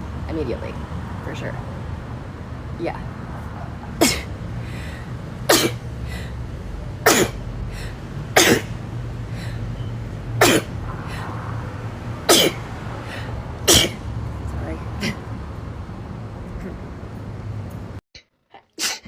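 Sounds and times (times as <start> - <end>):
person sneezing: 18.8 - 19.0.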